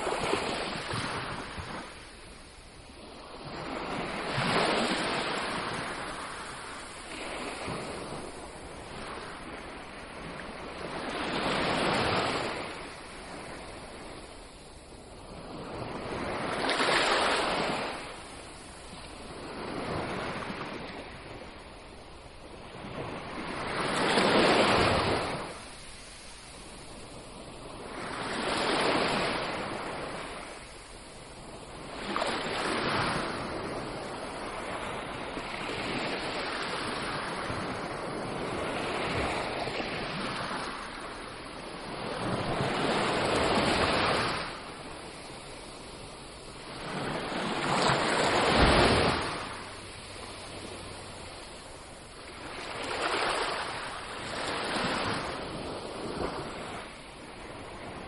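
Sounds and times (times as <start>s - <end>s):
sea waves breaking on beach: 0.0s - 58.0s.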